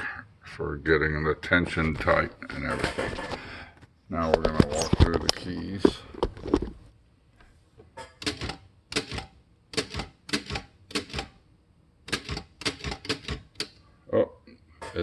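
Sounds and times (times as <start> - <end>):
manual typewriter key clacks: 8.2 - 11.3, 12.1 - 13.7.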